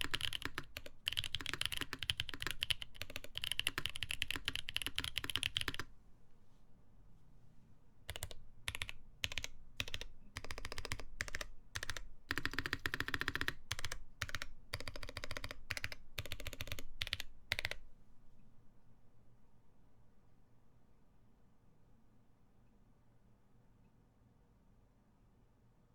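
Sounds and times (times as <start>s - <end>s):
mechanical keyboard typing: 0.0s - 5.9s, 8.1s - 17.9s.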